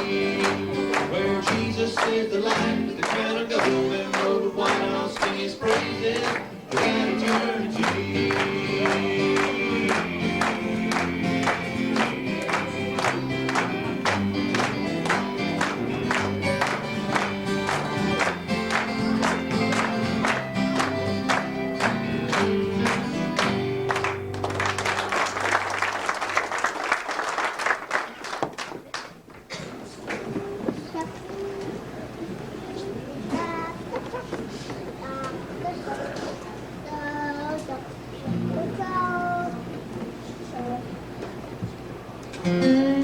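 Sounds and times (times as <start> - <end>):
band playing guitar bass and piano: 0.0 - 25.6, 42.2 - 43.0
congregation applauding: 0.0 - 29.3.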